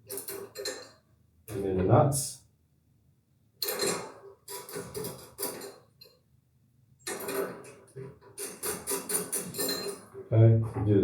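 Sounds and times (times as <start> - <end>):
small metal parts clinking: 8.4 - 10.1.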